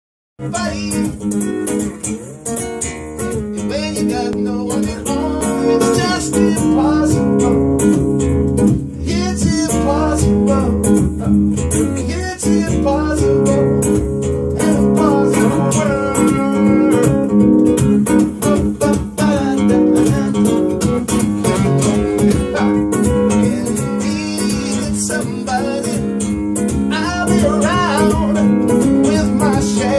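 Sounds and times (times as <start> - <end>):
person singing: 0.4 - 1.2, 3.6 - 7.8, 9.0 - 11.4, 12.0 - 13.9, 14.5 - 17.3, 18.1 - 20.8, 22.2 - 26.3, 26.9 - 29.9
acoustic guitar strumming: 0.4 - 29.9.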